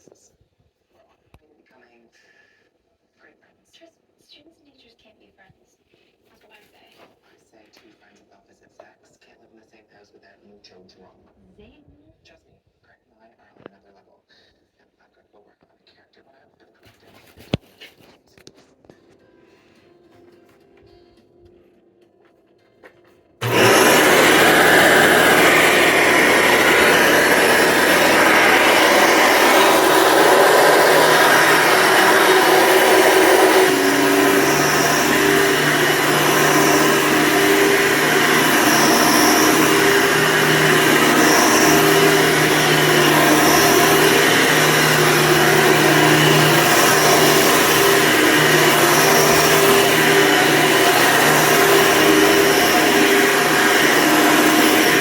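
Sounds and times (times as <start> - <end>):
vacuum cleaner running: 23.4 - 55.0.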